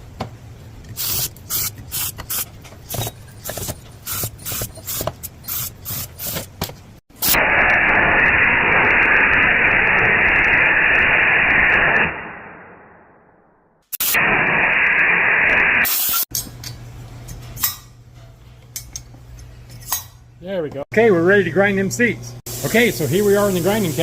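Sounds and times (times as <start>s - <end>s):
spray hissing blasts: 13.9s - 16.3s.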